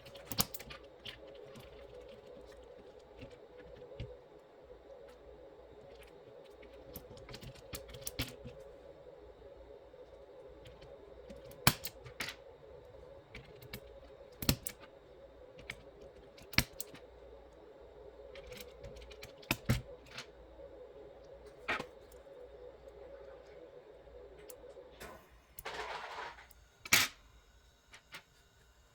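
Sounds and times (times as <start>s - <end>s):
steady hum: 0.0s - 28.9s
keyboard clicks and snaps: 0.1s - 2.6s, 10.6s - 12.4s, 13.3s - 14.9s.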